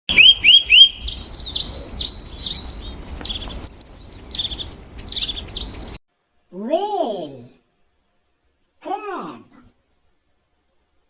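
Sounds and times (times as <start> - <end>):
small birds chirping: 0.1 - 6.0.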